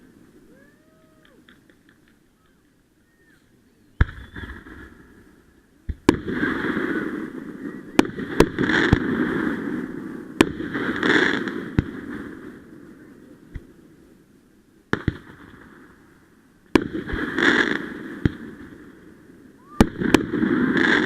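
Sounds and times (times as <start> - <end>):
fireworks hissing and crackling: 0.0 - 21.0
fireworks banging: 4.0 - 12.8, 14.9 - 15.9, 16.7 - 21.0.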